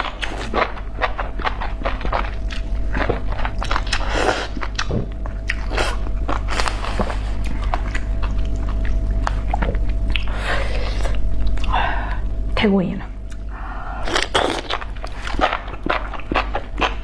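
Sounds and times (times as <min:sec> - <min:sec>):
steady low hum: 0:00.0 - 0:17.0
wet chewing bites and smacks: 0:00.1 - 0:04.0, 0:07.4 - 0:10.3.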